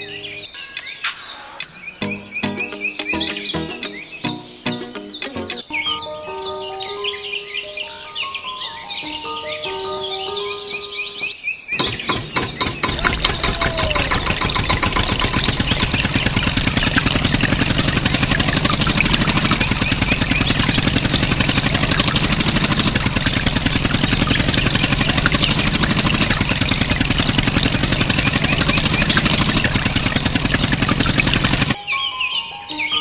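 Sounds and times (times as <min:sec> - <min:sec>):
tractor diesel engine idling: 0:12.8 - 0:31.8.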